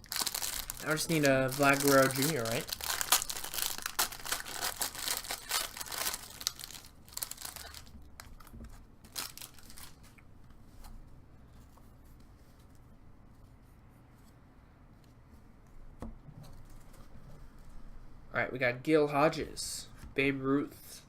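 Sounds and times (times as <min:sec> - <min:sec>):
foil wrapper tearing and crinkling: 0:00.0 - 0:08.5, 0:09.1 - 0:10.0.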